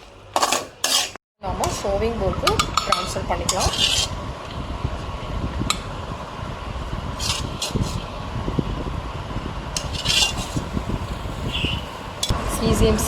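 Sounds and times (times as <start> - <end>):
spoon scraping a pan: 0.0 - 1.9, 2.6 - 4.2, 7.2 - 8.1, 9.8 - 10.8
low fan hum: 1.4 - 13.0.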